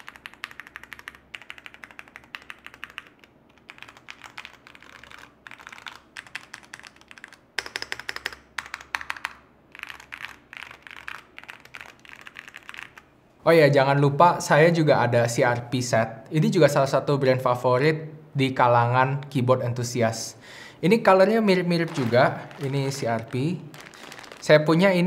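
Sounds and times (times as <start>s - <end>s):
mechanical keyboard typing: 0.0s - 13.0s.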